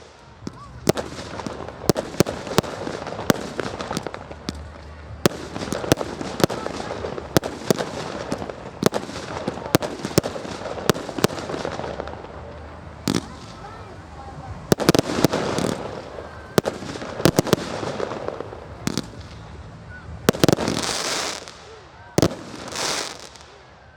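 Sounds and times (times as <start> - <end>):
background rumble: 0.3 - 22.7
firework shells bursting: 0.5 - 19.4.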